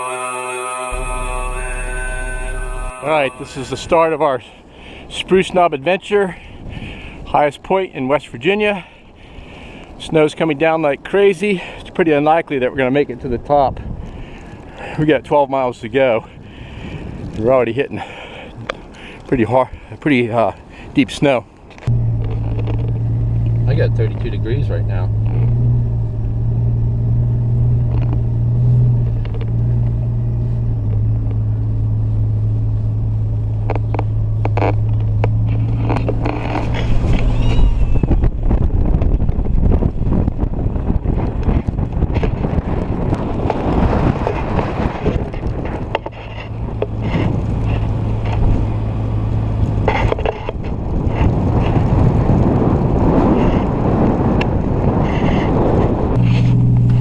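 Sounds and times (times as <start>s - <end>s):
engine drone: 0.0s - 5.0s, 21.9s - 38.6s, 56.1s - 57.0s.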